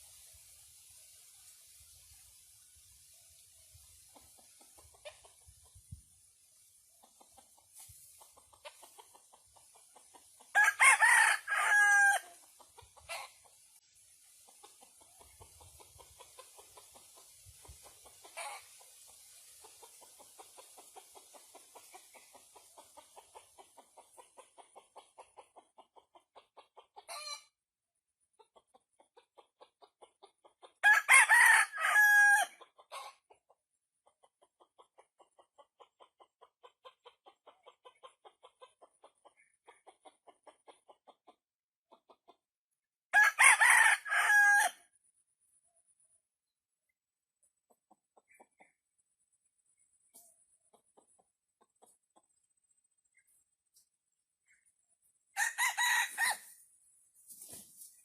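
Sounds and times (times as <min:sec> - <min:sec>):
rooster crowing: 0:10.5 - 0:12.3, 0:30.8 - 0:32.5, 0:43.1 - 0:44.8, 0:55.4 - 0:56.5.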